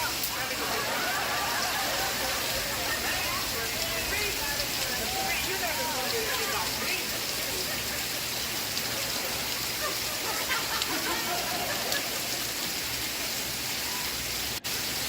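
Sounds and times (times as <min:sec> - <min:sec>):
steady rain: 0:00.0 - 0:15.0
faint television audio: 0:02.5 - 0:07.8.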